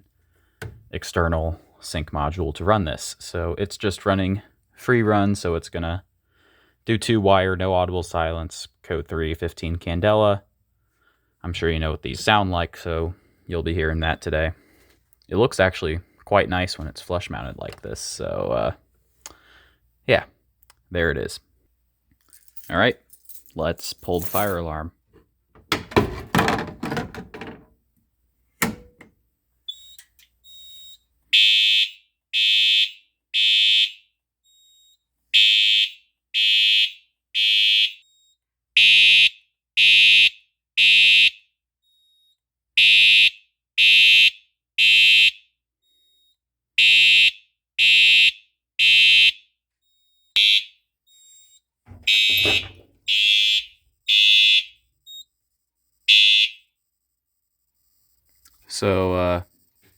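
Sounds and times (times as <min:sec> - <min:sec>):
fire alarm horn blasts: 0:30.6 - 0:42.1, 0:42.8 - 0:55.2, 0:56.0 - 0:56.8.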